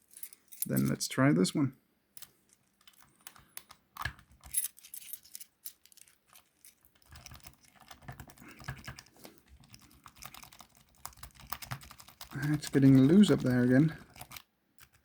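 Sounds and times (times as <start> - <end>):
key jiggling in lock: 2.7 - 15.0.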